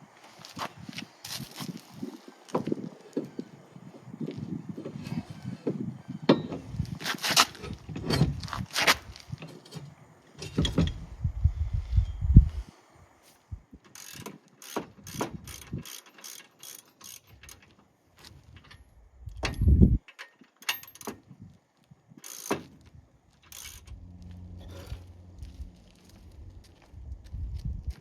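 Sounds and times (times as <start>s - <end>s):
bike rack ratchet clicking: 13.9s - 17.7s, 22.2s - 22.7s, 23.5s - 24.2s
low steady hum: 23.5s - 28.0s.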